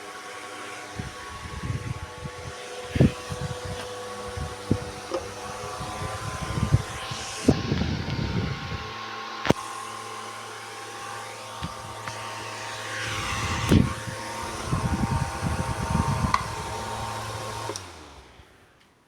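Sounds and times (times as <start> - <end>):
fan running: 0.0 - 19.0
gusty low rumbles: 1.0 - 9.0, 13.1 - 16.9.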